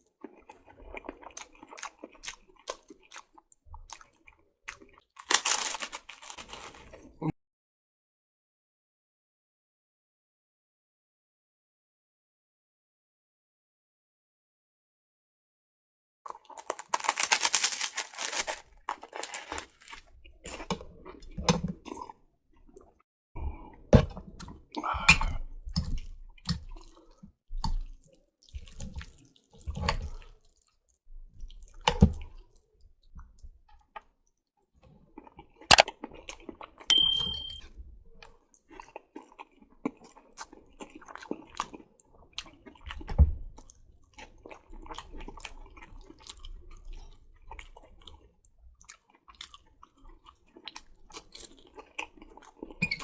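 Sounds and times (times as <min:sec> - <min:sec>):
wet chewing and mouth noises: 0:00.0 - 0:07.1, 0:16.3 - 0:36.9, 0:38.2 - 0:53.0
brief high ring: 0:36.9 - 0:37.6.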